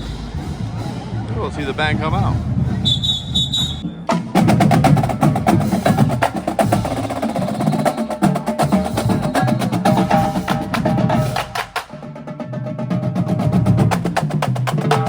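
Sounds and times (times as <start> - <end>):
bass drums: 0.0 - 12.0
fast snare drum strokes: 0.0 - 12.1, 13.0 - 15.0
whistle blast: 2.7 - 4.0.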